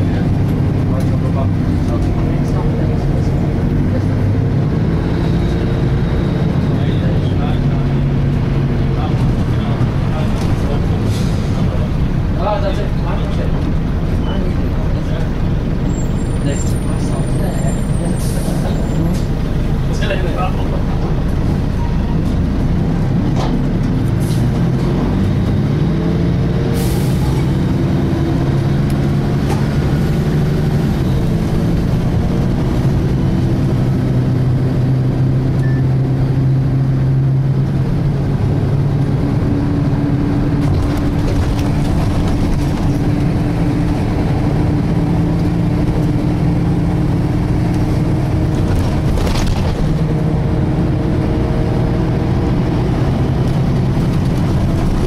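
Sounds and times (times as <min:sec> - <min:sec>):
bus engine whining: 0:00.0 - 0:55.0.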